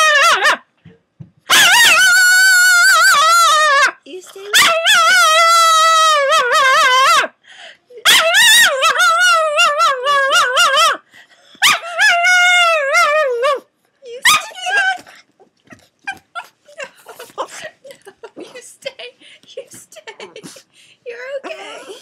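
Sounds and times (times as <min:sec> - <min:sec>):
dog crying excitedly: 0:00.0 - 0:00.6, 0:01.5 - 0:07.3, 0:08.0 - 0:11.0, 0:11.6 - 0:13.6, 0:14.2 - 0:17.6
dog whimpering and yelping: 0:08.0 - 0:11.0, 0:11.6 - 0:13.6, 0:14.2 - 0:17.7.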